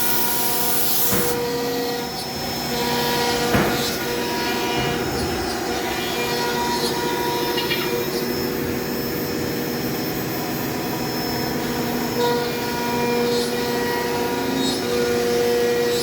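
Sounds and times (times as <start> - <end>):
cnc machine whine: 0.0 - 16.0
noisy rush: 3.9 - 8.7.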